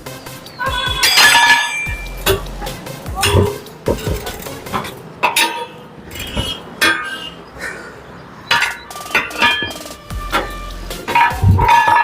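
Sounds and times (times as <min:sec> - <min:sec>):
metal tools clinking on metal: 0:01.0 - 0:02.6, 0:03.2 - 0:07.4, 0:08.5 - 0:12.0.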